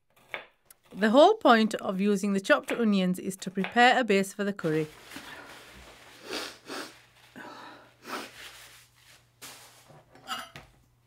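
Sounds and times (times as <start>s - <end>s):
person sniffing: 6.2s - 8.6s.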